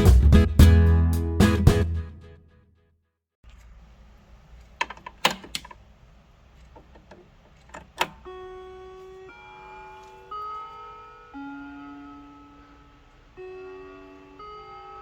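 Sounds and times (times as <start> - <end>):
clock mechanism clicks: 6.7 - 12.4
wall clock chime: 8.0 - 15.0.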